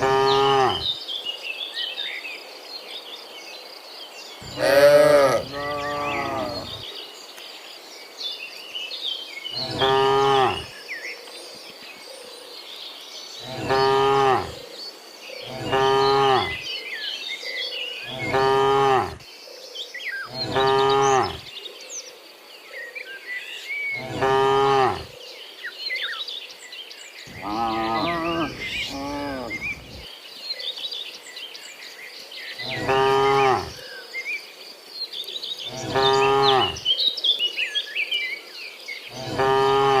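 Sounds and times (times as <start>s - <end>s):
cows mooing: 0.0s - 0.9s, 4.4s - 6.8s, 9.6s - 10.7s, 13.4s - 14.6s, 15.5s - 16.6s, 18.1s - 19.2s, 20.3s - 21.4s, 24.0s - 25.1s, 27.3s - 30.0s, 32.6s - 33.8s, 35.7s - 36.8s, 39.1s - 40.0s.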